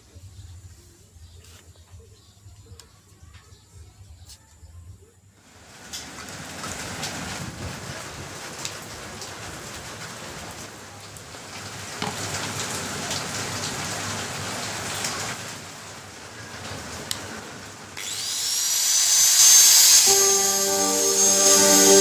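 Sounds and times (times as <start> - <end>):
steady rain falling: 5.4 - 18.0.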